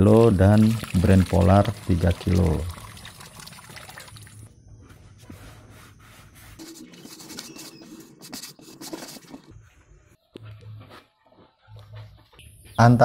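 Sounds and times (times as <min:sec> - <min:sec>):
feed rustling and scraping: 0:04.8 - 0:10.0.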